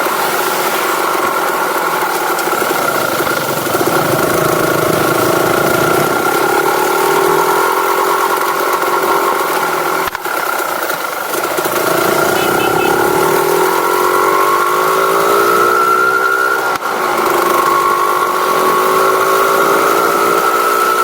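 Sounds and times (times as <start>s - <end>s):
vehicle engine running: 0.0s - 16.0s.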